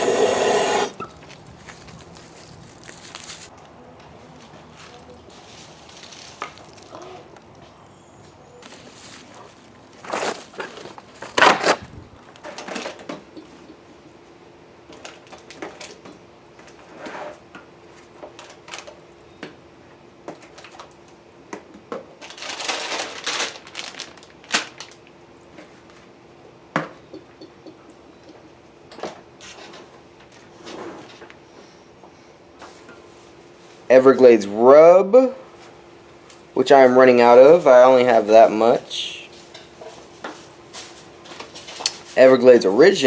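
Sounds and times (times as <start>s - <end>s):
rustling clatters: 1.1s - 3.5s.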